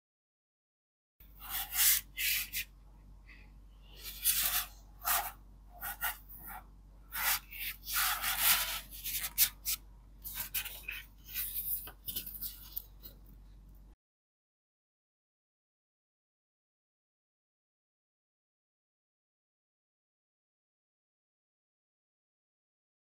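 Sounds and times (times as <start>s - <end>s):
paper rustling: 4.0s - 6.6s, 7.2s - 13.2s.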